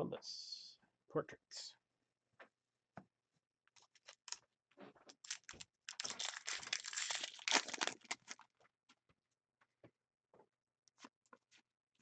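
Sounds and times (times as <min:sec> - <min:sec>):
card pack wrapper crinkling: 0:05.1 - 0:08.5.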